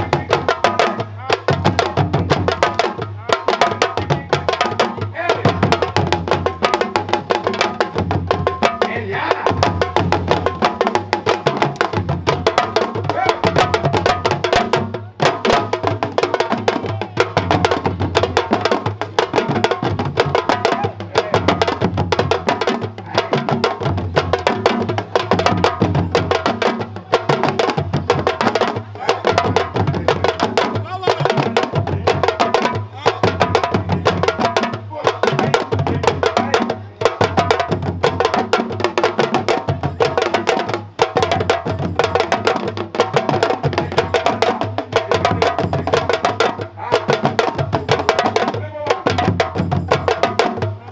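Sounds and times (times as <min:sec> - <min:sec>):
drum ensemble playing: 0:00.0 - 0:50.9.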